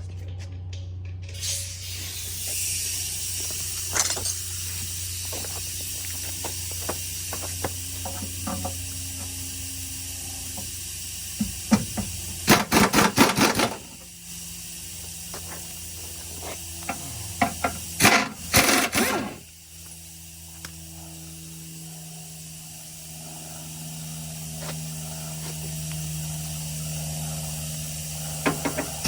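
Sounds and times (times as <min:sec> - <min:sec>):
steady hiss: 0:01.4 - 0:29.0
impact wrench hammering: 0:11.3 - 0:14.1, 0:16.8 - 0:19.4, 0:28.4 - 0:29.0.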